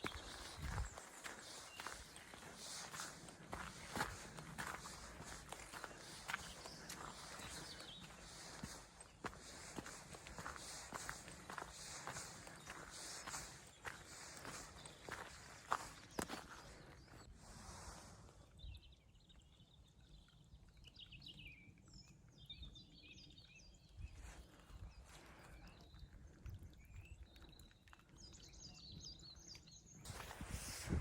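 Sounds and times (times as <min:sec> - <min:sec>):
rustling footsteps: 0:00.0 - 0:17.2, 0:30.1 - 0:31.0
songbird chirps and trills: 0:00.0 - 0:30.8
wind rumble on microphone: 0:00.1 - 0:01.0, 0:30.1 - 0:31.0.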